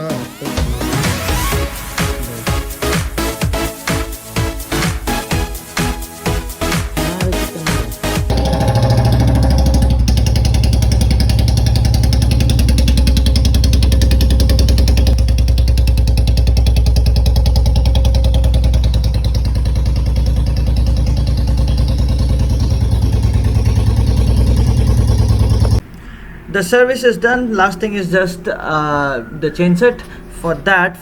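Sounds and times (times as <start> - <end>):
single-cylinder engine running: 6.6 - 25.8.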